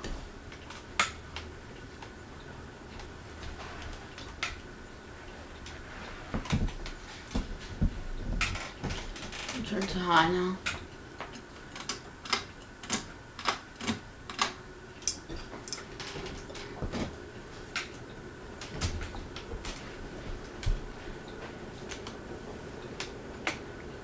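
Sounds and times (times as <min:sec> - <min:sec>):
ceiling fan motor hum: 0:00.0 - 0:24.0.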